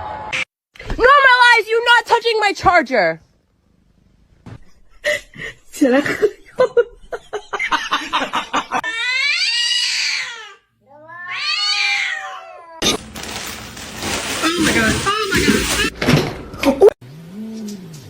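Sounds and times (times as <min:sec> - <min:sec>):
cat yowling and meowing: 0:09.0 - 0:12.8.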